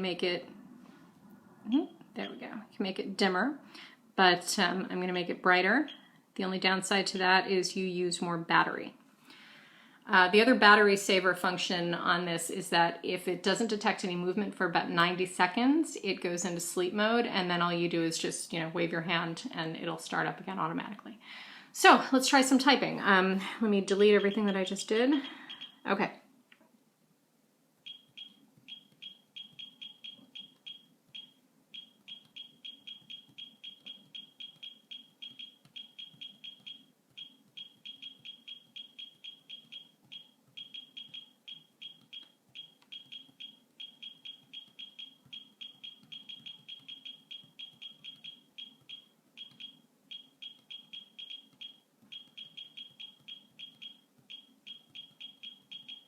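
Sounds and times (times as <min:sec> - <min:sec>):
short high keystroke beeps: 0:25.5 - 0:25.8, 0:27.9 - 0:56.0.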